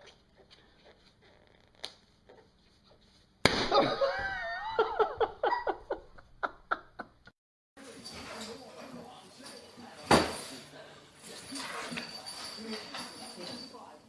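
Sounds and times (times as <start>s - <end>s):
person laughing: 3.6s - 7.3s.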